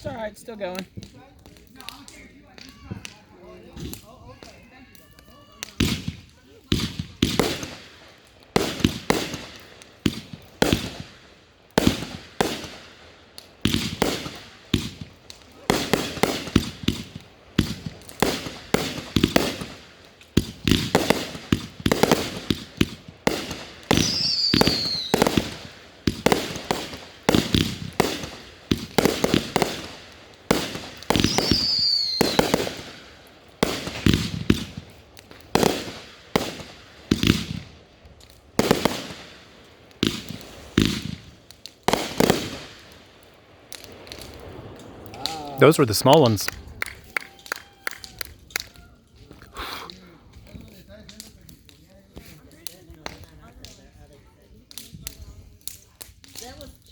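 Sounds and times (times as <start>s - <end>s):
fireworks bangs: 13.6s - 15.1s, 20.4s - 34.9s, 45.6s - 46.8s
falling firework whistles: 23.9s - 25.6s, 31.1s - 32.8s.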